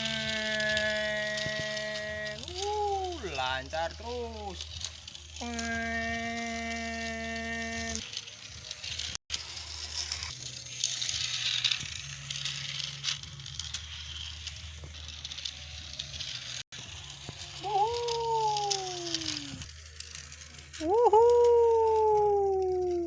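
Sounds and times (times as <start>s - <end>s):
low hum: 0.0s - 8.0s, 16.8s - 23.0s
toy train rattling and clicking: 0.0s - 23.0s.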